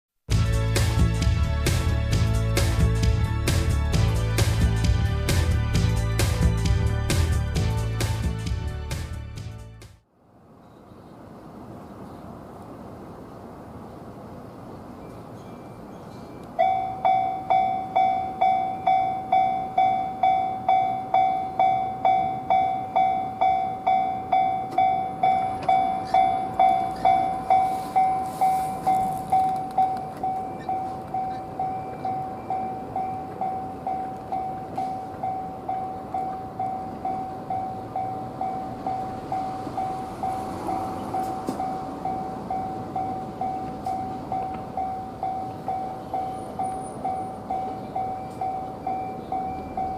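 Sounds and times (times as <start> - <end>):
level crossing warning bell: 14.9 - 49.9.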